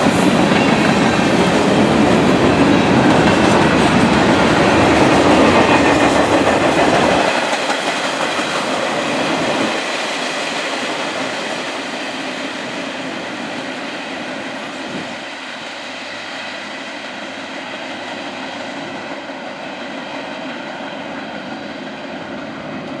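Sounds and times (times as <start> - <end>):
freight train wheels clattering: 0.0 - 15.4.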